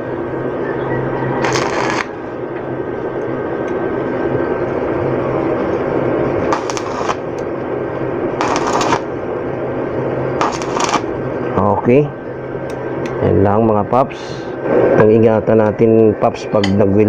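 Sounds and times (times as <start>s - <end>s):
sharp hissing bursts: 1.4s - 2.2s, 6.5s - 7.3s, 8.4s - 9.2s, 10.4s - 11.1s
welding arc crackling and sizzling: 1.4s - 2.6s, 3.7s - 12.1s.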